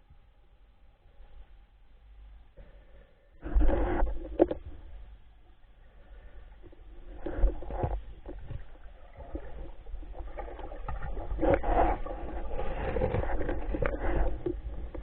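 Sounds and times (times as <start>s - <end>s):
water sloshing and gurgling: 3.4s - 5.2s, 5.8s - 15.0s.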